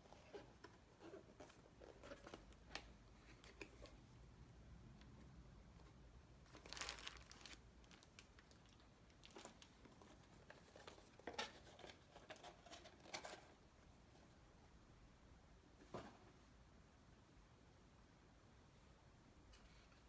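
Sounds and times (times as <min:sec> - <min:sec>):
sharp packaging crackles: 0:06.5 - 0:09.8
packaging crinkling and rustling: 0:06.5 - 0:13.5.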